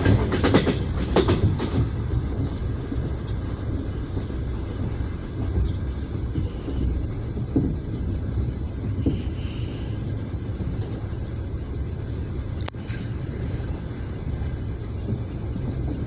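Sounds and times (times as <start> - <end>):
train wheels clacking over rail joint: 0.0 - 11.2
train carriage rumble: 0.0 - 16.0.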